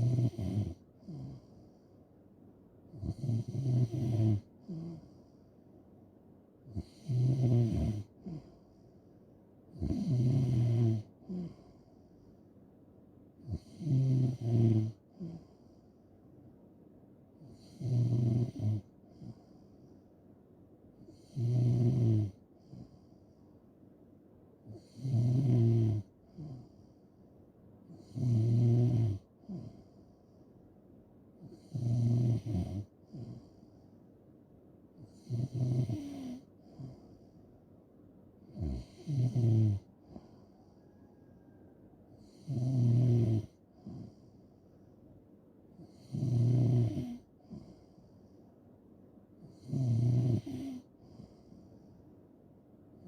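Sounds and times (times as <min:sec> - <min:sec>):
person snoring: 0:00.0 - 0:01.5, 0:03.0 - 0:05.2, 0:06.8 - 0:08.6, 0:09.8 - 0:11.8, 0:13.5 - 0:15.4, 0:17.4 - 0:19.4, 0:21.1 - 0:22.9, 0:24.7 - 0:26.7, 0:27.9 - 0:29.9, 0:31.4 - 0:33.6, 0:35.1 - 0:37.1, 0:38.5 - 0:40.5, 0:42.2 - 0:44.2, 0:45.8 - 0:47.9, 0:49.5 - 0:51.6.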